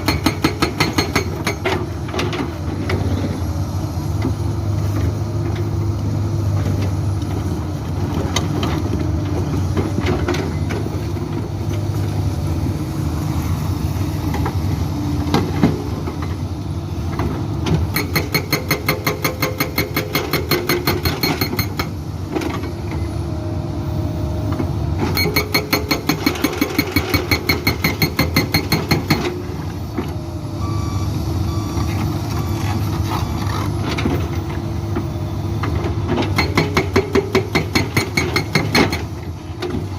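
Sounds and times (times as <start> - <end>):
hydraulic breaker hammering rock: 0.0 - 1.8, 17.9 - 21.9, 25.1 - 29.4, 36.2 - 39.2
excavator diesel engine running: 0.0 - 39.9.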